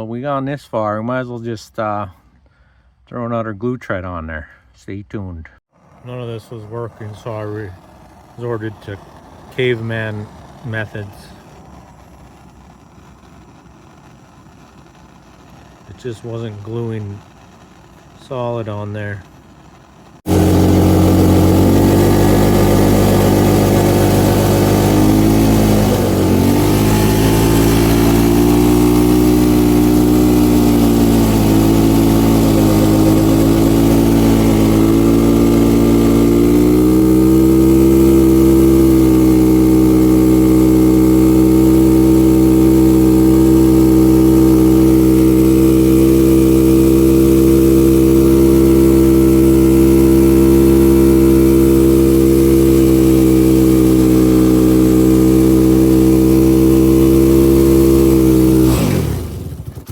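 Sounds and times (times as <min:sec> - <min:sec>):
engine running at high revs: 0:05.8 - 0:59.9.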